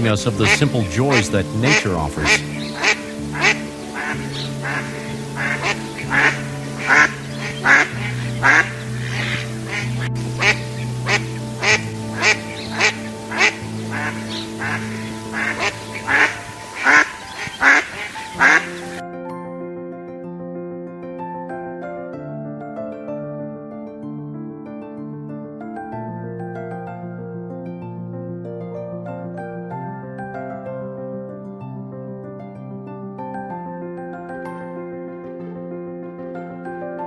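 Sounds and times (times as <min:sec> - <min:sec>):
ducks quacking: 0:00.0 - 0:19.0
background music: 0:00.0 - 0:37.0.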